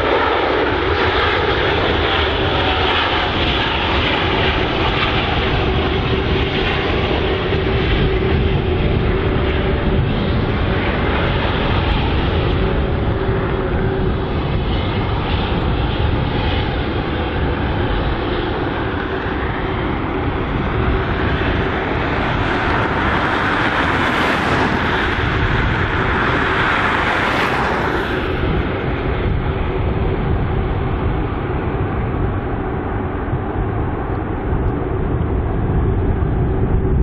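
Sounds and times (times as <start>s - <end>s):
jet airliner roar: 0.0s - 37.0s.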